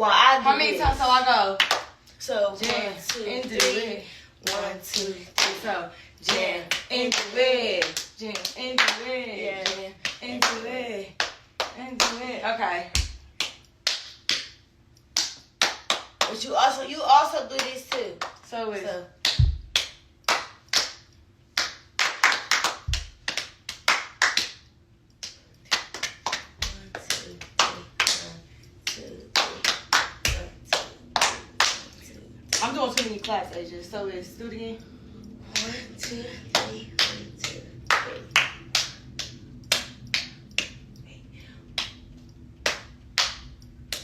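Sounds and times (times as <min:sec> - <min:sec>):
hand claps: 0:00.8 - 0:02.0, 0:02.6 - 0:03.8, 0:06.3 - 0:09.0, 0:13.0 - 0:14.6, 0:15.2 - 0:16.4, 0:19.2 - 0:24.6, 0:25.2 - 0:33.1, 0:35.6 - 0:40.8, 0:42.6 - 0:44.0.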